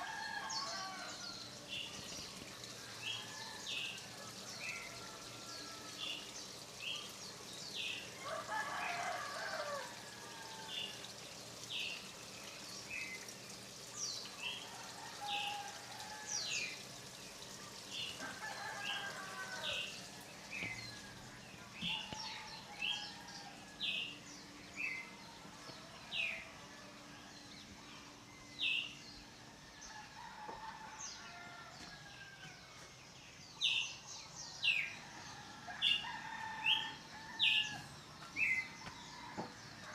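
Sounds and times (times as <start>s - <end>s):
roosters crowing: 0.0s - 1.6s, 2.7s - 6.5s, 7.8s - 11.1s, 14.5s - 16.9s, 17.9s - 27.5s, 35.2s - 39.9s
water falling into a pond: 0.0s - 26.6s
songbirds chirping: 0.0s - 39.9s.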